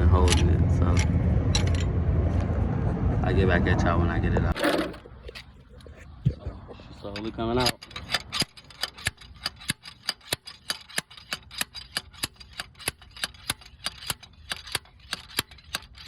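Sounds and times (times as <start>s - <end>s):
ratchet clicking: 0.0s - 1.9s, 7.0s - 16.0s.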